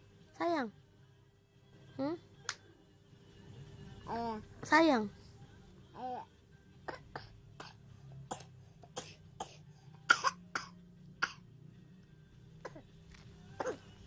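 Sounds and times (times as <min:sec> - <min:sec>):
child coughing: 0:06.8 - 0:11.5, 0:12.6 - 0:12.9, 0:13.6 - 0:13.9.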